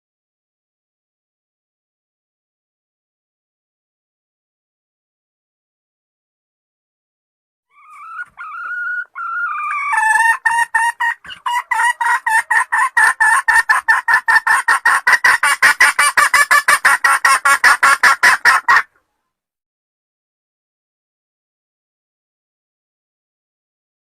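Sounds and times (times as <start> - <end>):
hen cackling and clucking: 7.7 - 19.2.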